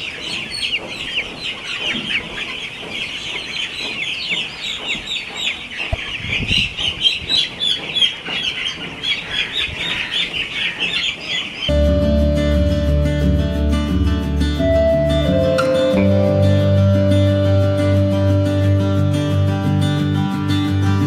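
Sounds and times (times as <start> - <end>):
chicks peeping: 0.0 - 20.1
guitar music: 11.7 - 21.0.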